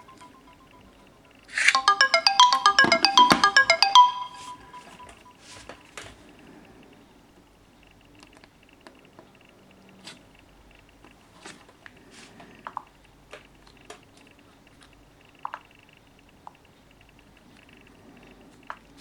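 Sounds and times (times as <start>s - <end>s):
brief ringing tone: 1.8s - 5.1s.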